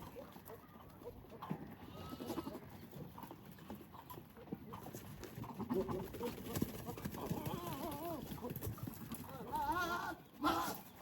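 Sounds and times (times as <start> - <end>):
goats calling: 1.0 - 4.1, 7.0 - 11.0.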